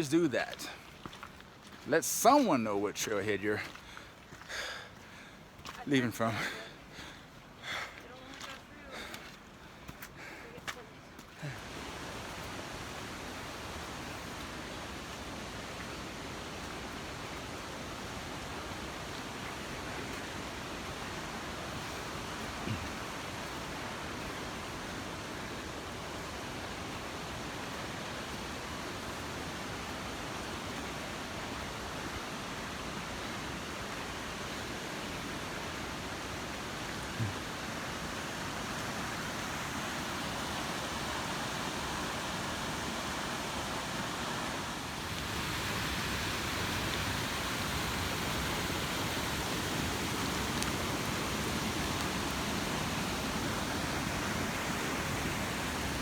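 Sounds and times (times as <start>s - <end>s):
mountain stream rushing: 0.0s - 56.0s.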